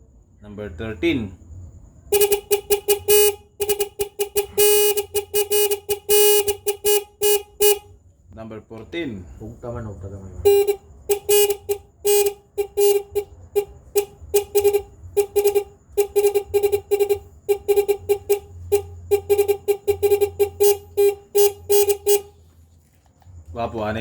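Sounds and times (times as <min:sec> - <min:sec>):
electronic caller buzzy pulses: 0:03.1 - 0:07.8, 0:14.3 - 0:22.2.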